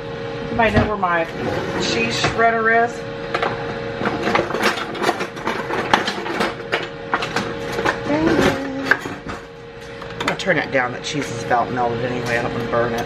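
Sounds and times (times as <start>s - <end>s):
steady hum: 0.0s - 13.0s
kitchen utensils clattering: 3.4s - 9.5s.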